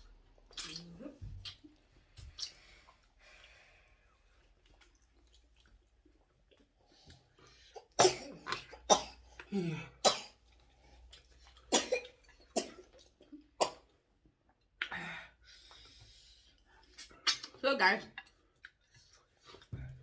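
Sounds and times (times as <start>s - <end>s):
person coughing: 8.0s - 10.4s.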